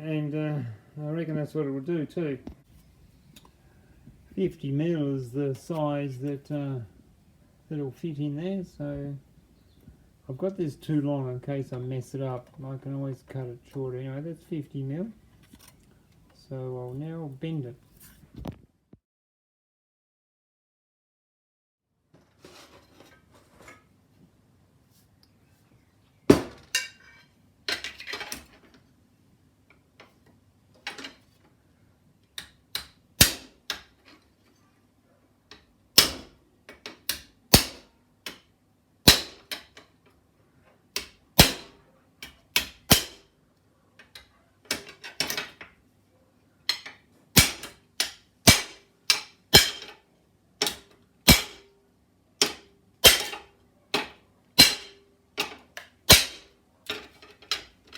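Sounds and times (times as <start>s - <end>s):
hammer striking sheet metal: 33.2s - 33.5s, 37.1s - 37.8s, 39.1s - 39.4s, 41.4s - 41.7s, 42.9s - 43.2s, 47.4s - 49.9s, 50.6s - 51.7s, 52.4s - 53.4s, 54.6s - 55.0s, 56.1s - 56.5s.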